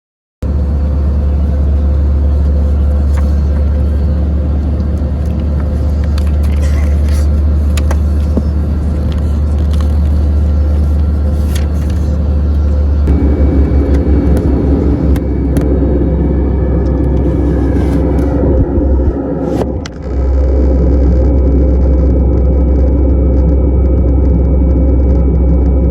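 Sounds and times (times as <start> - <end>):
vehicle rumbling from inside: 0.4 - 25.9.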